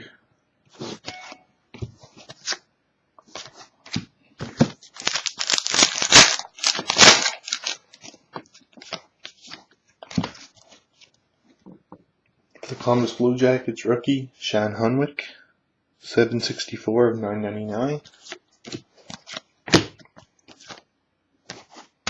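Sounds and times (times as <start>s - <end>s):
foil wrapper crinkling: 4.9s - 9.7s.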